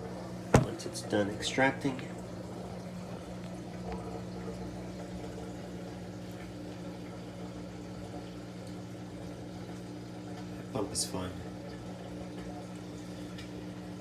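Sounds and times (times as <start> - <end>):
washer drain pump humming: 0.0 - 14.0
water flowing through pump: 0.0 - 14.0.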